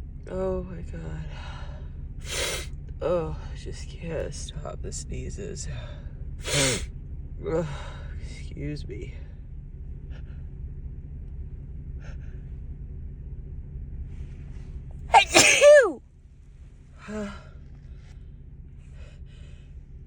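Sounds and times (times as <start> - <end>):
woman sneezing: 2.3 - 2.6, 6.5 - 6.8, 15.1 - 16.0
short breathy sound: 15.1 - 16.0.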